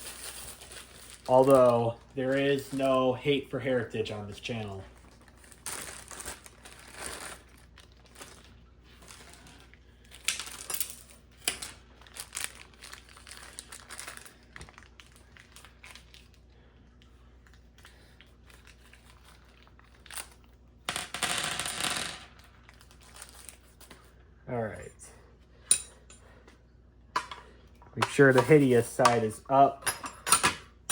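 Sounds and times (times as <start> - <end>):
packaging crinkling and rustling: 0.0 - 20.7, 22.4 - 24.1.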